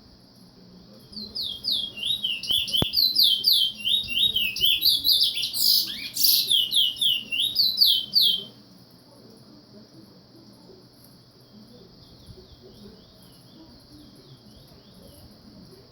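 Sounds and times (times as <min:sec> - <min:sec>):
crickets chirring: 0:00.0 - 0:15.9
pet bird singing: 0:01.1 - 0:08.6.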